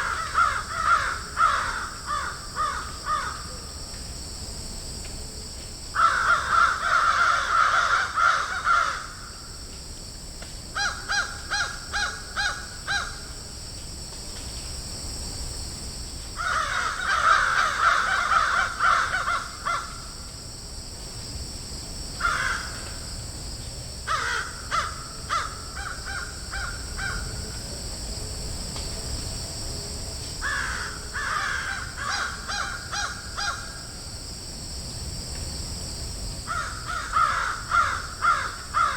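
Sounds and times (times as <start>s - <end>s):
crows cawing: 0.0s - 3.5s, 6.0s - 9.4s, 10.8s - 13.2s, 16.4s - 20.1s, 22.2s - 22.8s, 24.1s - 27.2s, 30.4s - 33.8s, 36.5s - 38.9s
steady high hiss: 0.0s - 38.9s.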